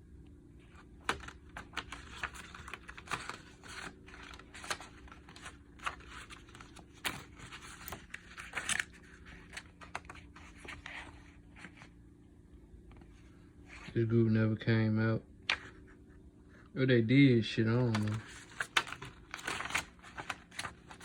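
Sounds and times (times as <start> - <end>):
paper and plastic rustling: 0.6 - 12.0, 17.8 - 21.0.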